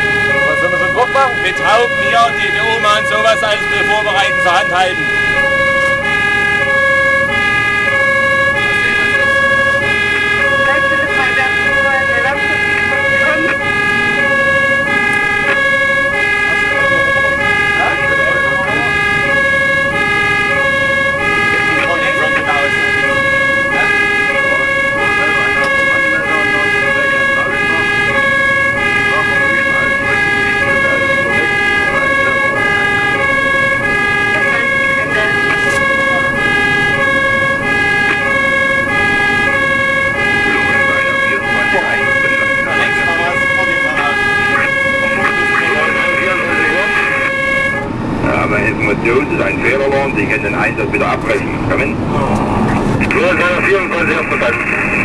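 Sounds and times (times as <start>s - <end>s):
truck engine and road noise: 0.0s - 55.0s
two-tone fire engine siren: 0.0s - 55.0s
high whine: 29.1s - 55.0s.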